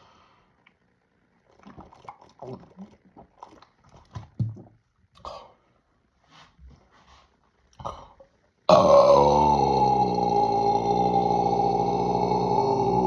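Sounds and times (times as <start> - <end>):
loud drawn-out belch: 8.7 - 13.0.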